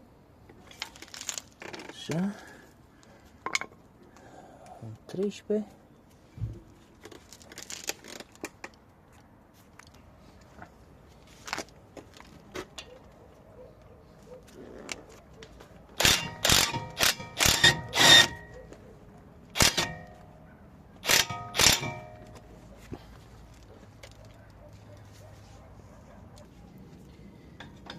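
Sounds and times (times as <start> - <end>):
metal hand tools clinking: 21.0 - 22.4.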